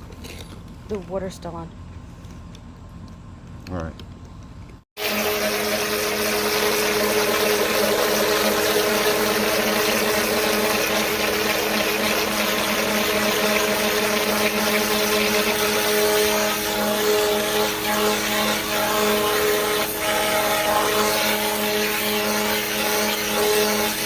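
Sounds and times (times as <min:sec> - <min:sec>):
pressure washer motor hum: 0:05.0 - 0:24.0.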